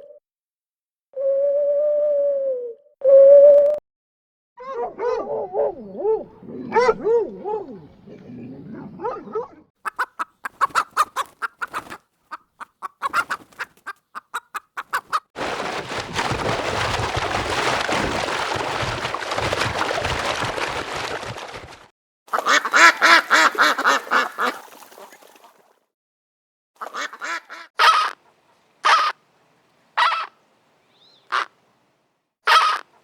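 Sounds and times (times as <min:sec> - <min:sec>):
domestic fowl calling: 0:09.8 - 0:15.2, 0:22.3 - 0:24.6, 0:26.8 - 0:28.2, 0:28.8 - 0:29.2, 0:30.0 - 0:30.4, 0:31.3 - 0:31.5, 0:32.5 - 0:33.0.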